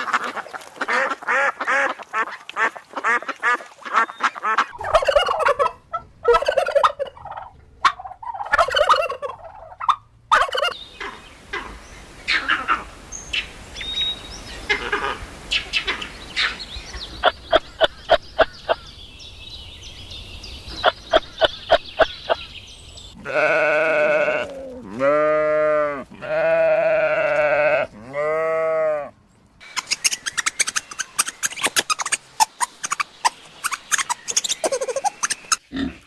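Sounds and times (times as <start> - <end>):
long bleats: 23.2 - 29.2.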